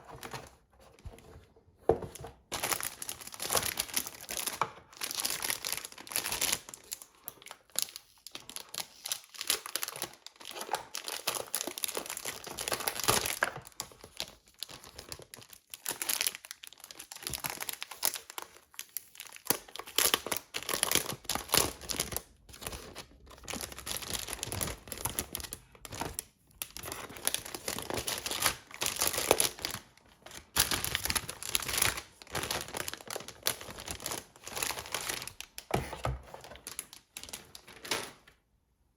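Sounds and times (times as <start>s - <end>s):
packaging crinkling and rustling: 0.0s - 38.4s
packaging tearing: 26.7s - 35.6s, 36.4s - 38.2s.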